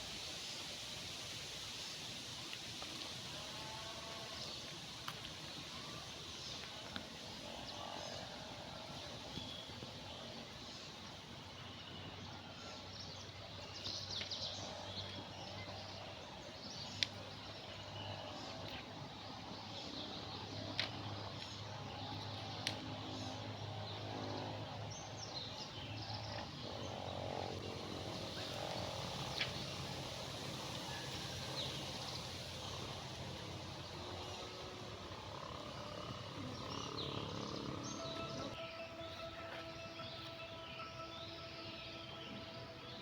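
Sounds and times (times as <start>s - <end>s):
background hiss: 0.0s - 43.0s
drawn-out animal call: 26.7s - 39.5s.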